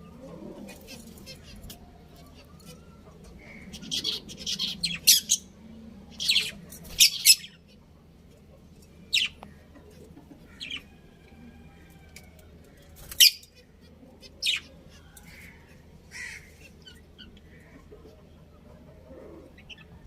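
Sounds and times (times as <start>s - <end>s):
budgerigars chirping: 3.4s - 5.5s, 6.2s - 7.6s.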